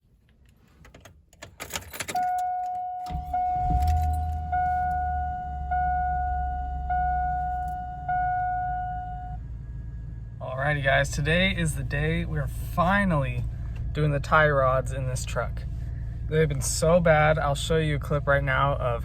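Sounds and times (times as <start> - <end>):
keys jangling in ignition: 0.8 - 4.4
truck engine cranking and idling: 1.1 - 19.0
warning chime dinging: 2.1 - 9.4.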